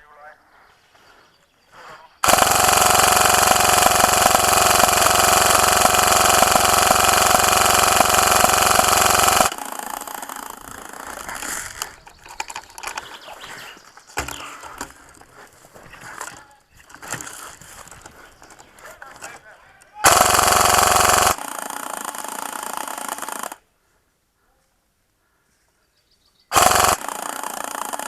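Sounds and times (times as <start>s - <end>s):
electric gun firing burst: 2.2s - 11.9s, 20.0s - 23.6s, 26.5s - 28.0s
scattered clicks and pops: 2.2s - 13.4s.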